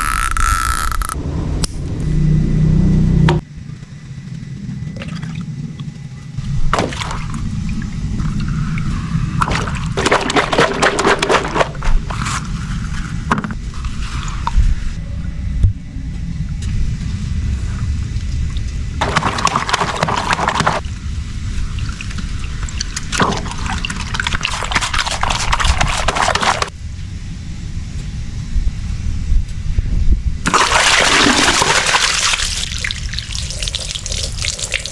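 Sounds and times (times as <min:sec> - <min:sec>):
steady low rumble: 0:01.0 - 0:34.9
water gushing and splashing: 0:06.8 - 0:12.2, 0:19.0 - 0:20.8, 0:21.7 - 0:26.7, 0:30.5 - 0:34.9.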